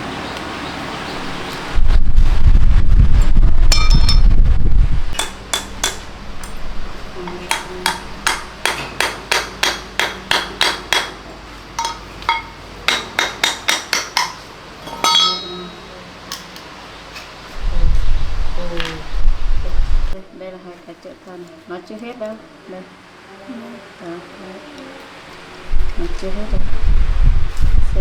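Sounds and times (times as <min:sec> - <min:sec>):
hammer tapping on metal: 0:05.2 - 0:06.6, 0:07.2 - 0:16.6.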